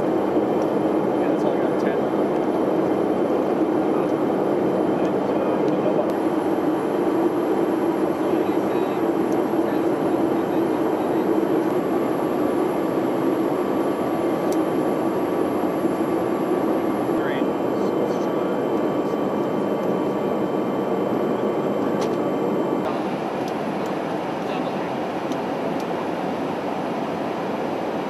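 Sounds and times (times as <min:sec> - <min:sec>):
jet engine and airflow drone: 0:00.0 - 0:28.0
low hum: 0:06.0 - 0:24.6
faint steady tone: 0:06.1 - 0:17.5.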